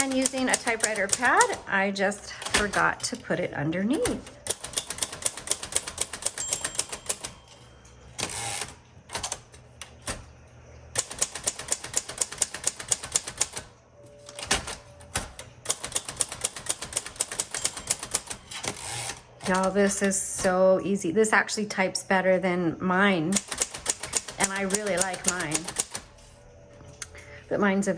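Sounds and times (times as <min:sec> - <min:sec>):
typewriter keys clacking: 0:00.0 - 0:01.7, 0:02.3 - 0:03.2, 0:04.0 - 0:07.6, 0:11.0 - 0:13.7, 0:14.3 - 0:18.8, 0:23.4 - 0:26.1.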